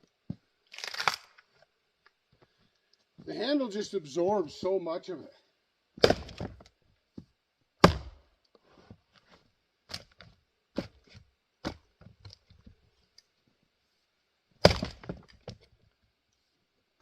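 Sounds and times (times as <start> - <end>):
axe splitting wood: 6.0 - 6.7, 7.8 - 8.2, 11.6 - 11.9, 14.6 - 15.6.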